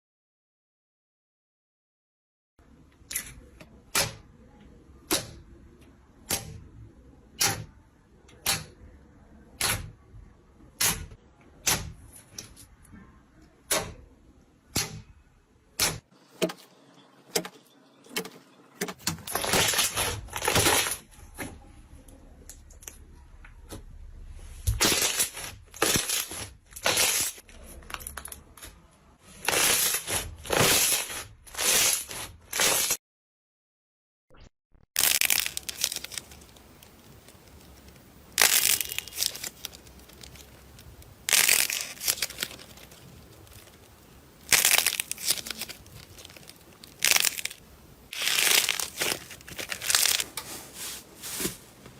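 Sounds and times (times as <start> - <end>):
slime squishing and popping: 35.0 - 50.2.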